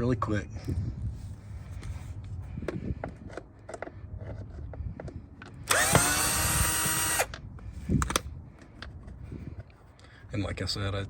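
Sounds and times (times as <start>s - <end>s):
power drill whining: 5.6s - 7.4s.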